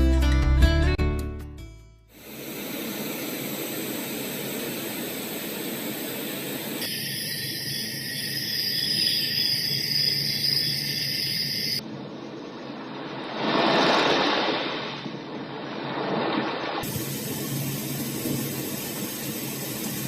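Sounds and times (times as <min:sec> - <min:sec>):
white noise machine: 0:02.1 - 0:11.8, 0:16.8 - 0:20.0.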